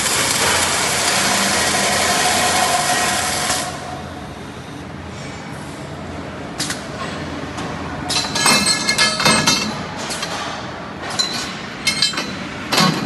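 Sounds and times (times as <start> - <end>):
steady machine noise: 0.0 - 13.0
steel parts clanking: 8.1 - 13.0.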